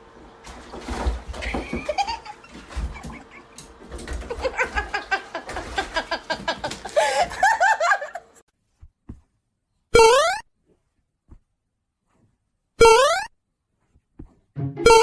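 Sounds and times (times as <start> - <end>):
people laughing: 4.3 - 8.4
rising tone: 14.6 - 15.0.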